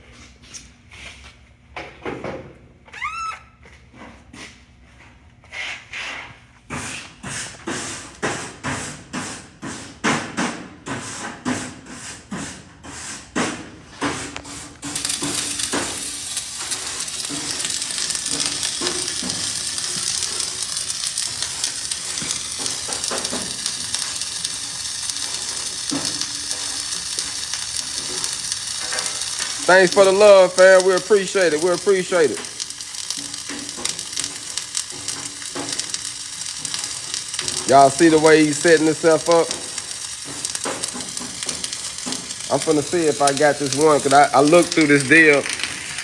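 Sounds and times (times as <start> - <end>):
welding arc crackling: 14.0 - 46.0.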